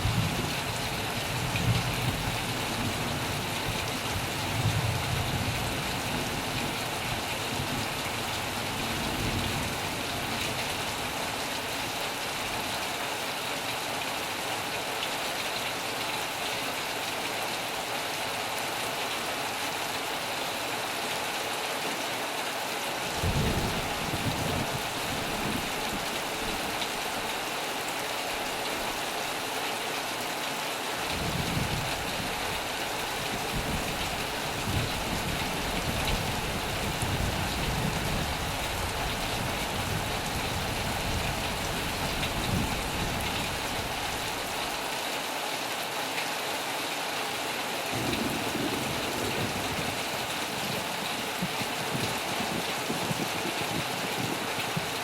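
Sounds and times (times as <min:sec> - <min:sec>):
heavy rain: 0:00.0 - 0:55.0
thunder rumbling: 0:47.9 - 0:54.8.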